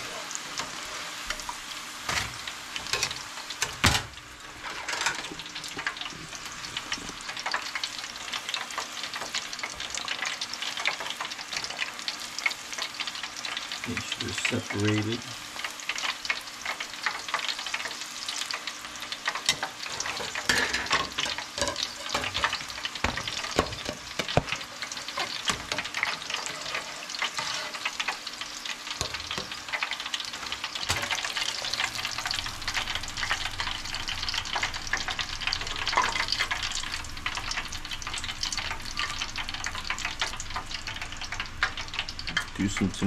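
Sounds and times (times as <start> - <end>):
food sizzling in deep oil: 0.0 - 43.0.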